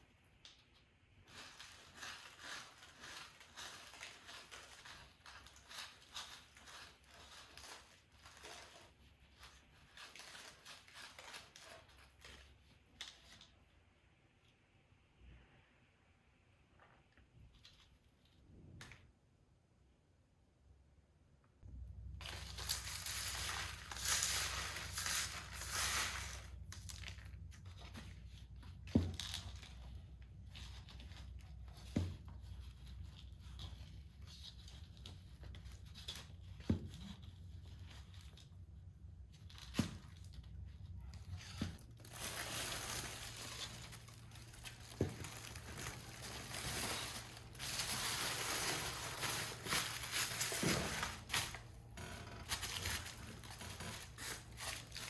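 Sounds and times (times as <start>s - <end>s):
rustling and crinkling: 0.1s - 14.6s, 16.7s - 19.2s, 21.6s - 55.0s
low steady hum: 11.2s - 55.0s.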